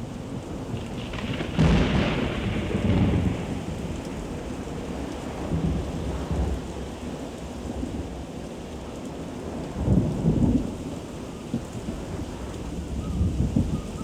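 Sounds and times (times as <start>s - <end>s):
thunder rumbling: 0.0s - 8.2s
heavy rain pouring: 0.0s - 14.0s.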